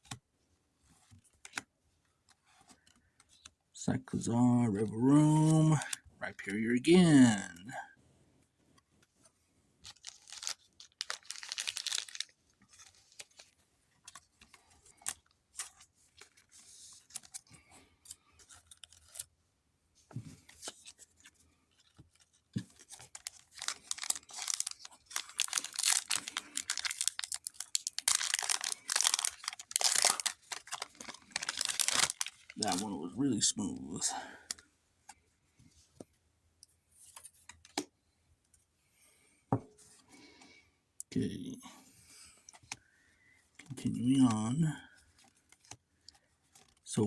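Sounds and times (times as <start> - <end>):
foil wrapper crinkling and tearing: 9.9 - 13.5, 22.2 - 32.9.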